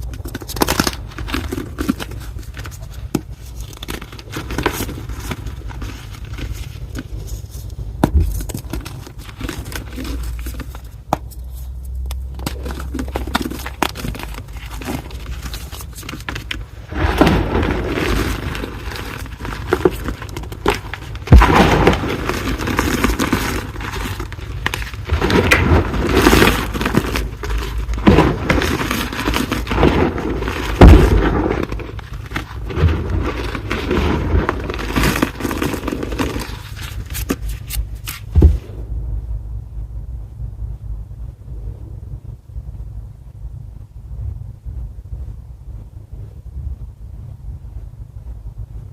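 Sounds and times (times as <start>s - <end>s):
chalk block crunching: 0.0s - 38.6s.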